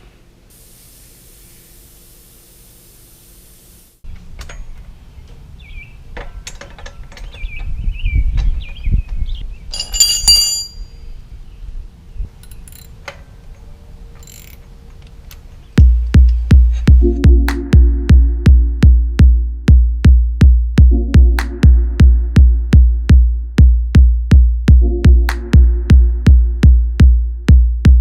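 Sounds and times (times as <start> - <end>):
air hissing out of inner tube: 0.0 - 4.0
clicks and squeaks on bicycle wheel: 6.2 - 10.8, 12.4 - 15.4
bright metallic ring: 9.8 - 11.0.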